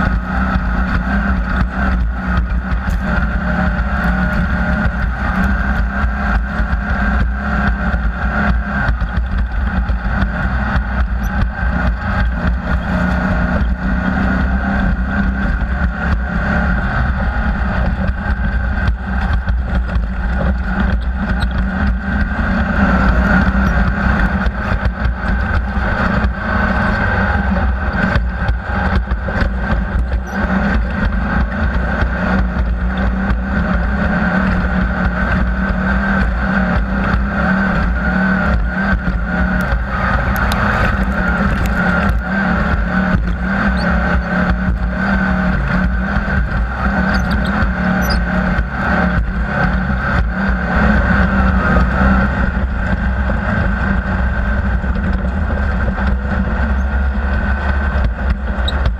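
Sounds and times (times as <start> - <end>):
off-road vehicle engine running: 0.0 - 58.9.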